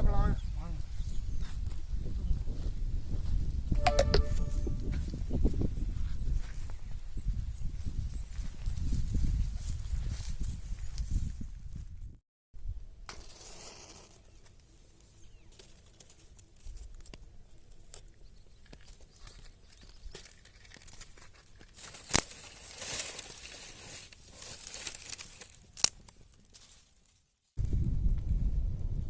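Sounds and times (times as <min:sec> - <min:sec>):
plants rustling and tearing: 0:15.6 - 0:27.3
stems snapping: 0:17.9 - 0:26.6.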